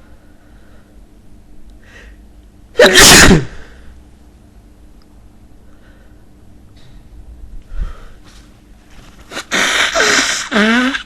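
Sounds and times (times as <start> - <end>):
man sneezing: 2.8 - 3.8, 9.3 - 11.0
man sniffing and breathing: 9.0 - 11.0.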